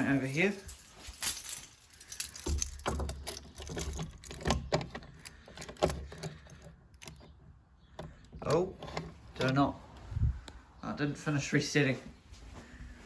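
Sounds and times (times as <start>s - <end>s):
handling clicks and knocks: 0.0s - 9.7s.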